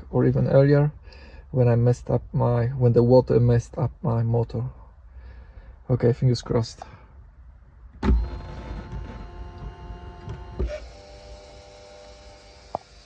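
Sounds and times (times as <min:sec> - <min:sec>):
pump motor whining: 0:08.0 - 0:13.0.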